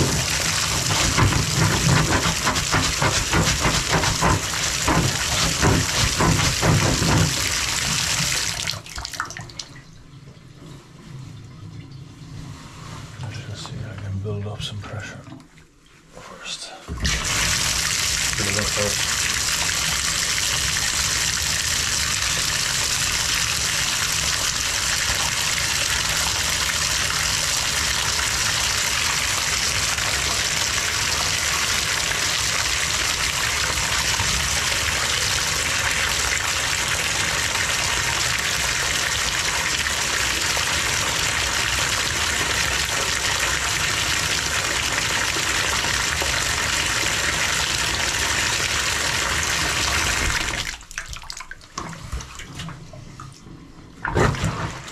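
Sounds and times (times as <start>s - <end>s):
water running from bathtub faucet: 0.0s - 9.8s, 17.0s - 54.9s.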